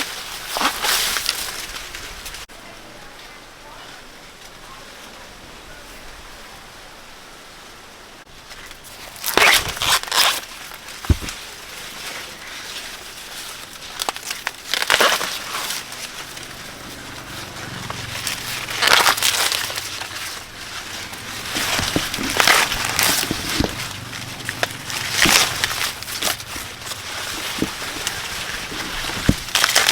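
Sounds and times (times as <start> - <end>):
dry corn leaves crackling: 0.0 - 5.4, 8.3 - 29.9
dull thud: 11.1 - 11.4.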